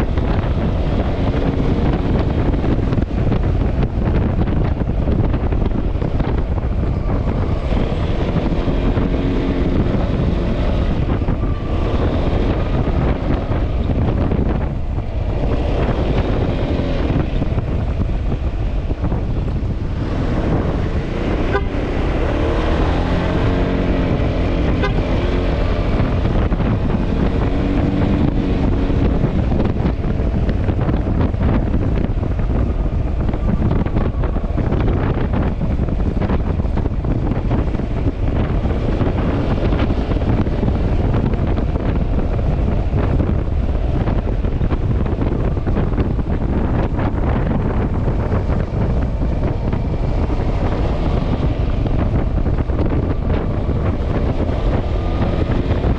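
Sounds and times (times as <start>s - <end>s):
scooter engine and road noise: 0.0s - 55.9s
wind buffeting microphone: 0.0s - 55.9s.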